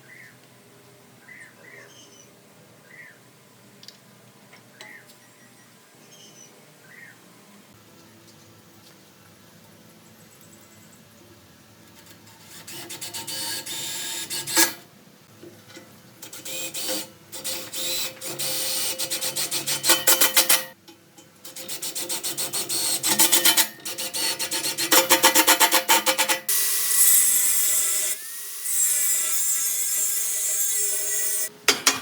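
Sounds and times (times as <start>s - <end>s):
hand tool rasping on metal: 16.4s - 20.8s, 21.5s - 26.5s.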